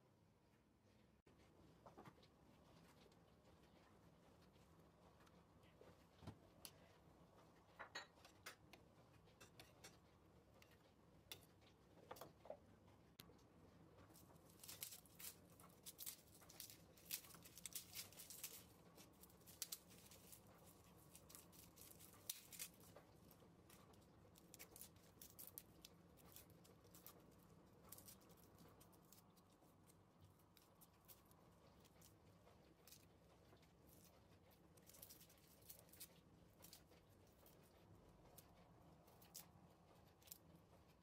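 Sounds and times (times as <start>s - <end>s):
ingredients being cut and handled: 14.1s - 41.0s.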